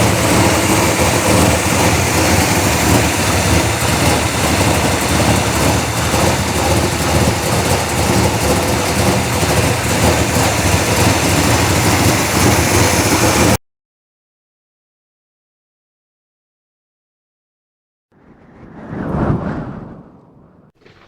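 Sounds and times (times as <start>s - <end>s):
loud car engine running: 0.0s - 13.6s.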